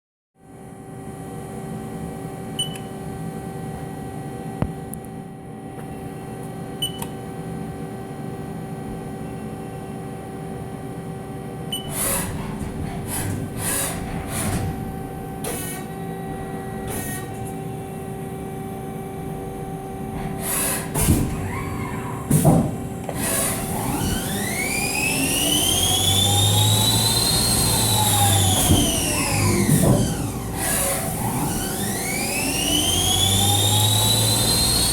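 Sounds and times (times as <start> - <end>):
metal cutting noise: 11.9 - 15.9, 20.2 - 34.9
lathe machine whine: 22.9 - 34.9.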